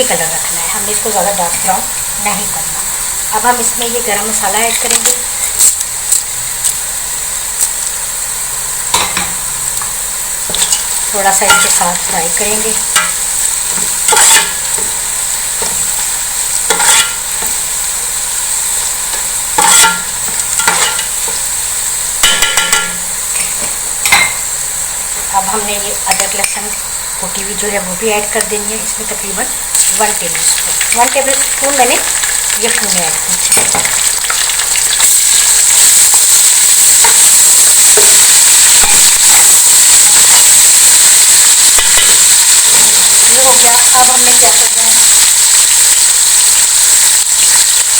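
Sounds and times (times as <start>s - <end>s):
onions sizzling in hot oil: 0.0s - 47.9s
spoon scraping a pot: 10.5s - 11.8s, 12.9s - 15.0s, 15.6s - 17.6s, 19.1s - 21.4s.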